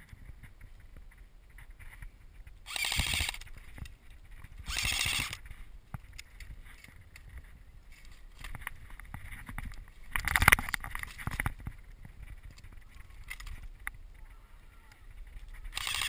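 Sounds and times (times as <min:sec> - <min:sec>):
airsoft gun bursts: 0:02.7 - 0:03.4, 0:04.7 - 0:05.4, 0:15.7 - 0:16.0.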